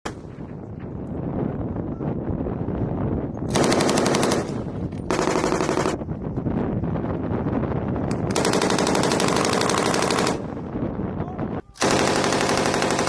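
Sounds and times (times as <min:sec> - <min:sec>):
machine gun firing bursts: 0:03.5 - 0:06.0, 0:08.3 - 0:10.6, 0:11.8 - 0:13.0.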